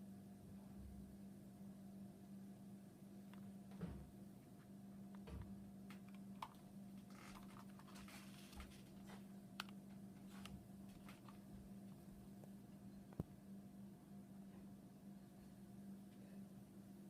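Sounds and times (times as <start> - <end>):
ceiling fan humming: 0.0 - 17.0
light clicks and ticks: 8.5 - 10.6.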